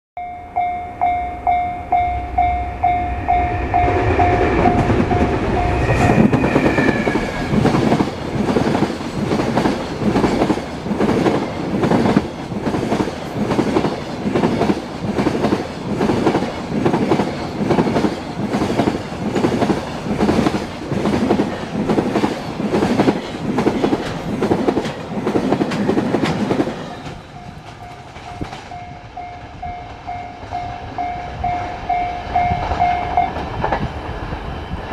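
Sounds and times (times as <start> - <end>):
crossing bell electronic ding: 0.2 - 6.4, 27.3 - 33.4
brief falling tone: 0.2 - 7.6
train wheels clacking over rail joints: 4.6 - 30.1.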